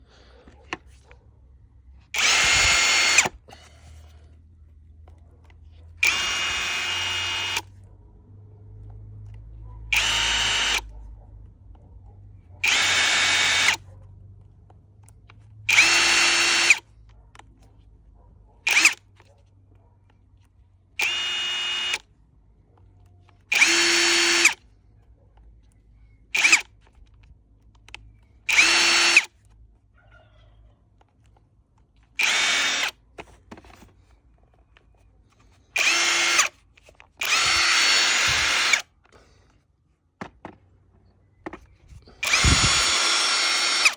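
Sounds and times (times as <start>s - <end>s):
angle grinder motor whine: 2.2s - 3.3s, 6.0s - 7.6s, 12.6s - 13.8s, 15.7s - 16.8s, 21.0s - 22.0s, 23.5s - 24.6s, 35.8s - 36.5s, 37.2s - 38.8s, 42.0s - 43.9s.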